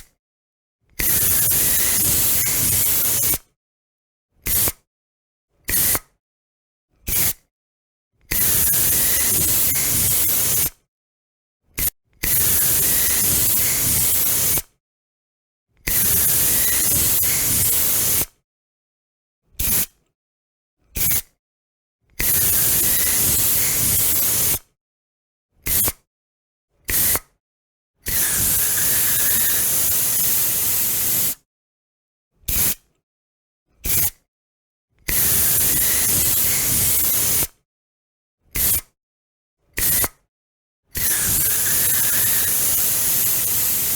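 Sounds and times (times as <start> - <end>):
aerosol spray can hissing: 23.3 - 24.6, 28.2 - 31.4, 41.1 - 43.9.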